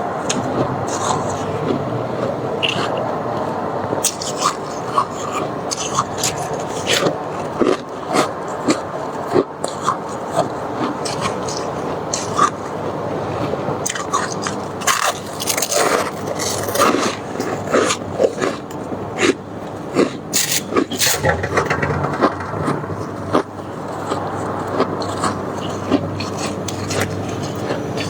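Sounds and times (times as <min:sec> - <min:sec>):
ice being scraped and crunched: 0:14.8 - 0:17.0, 0:20.4 - 0:21.2.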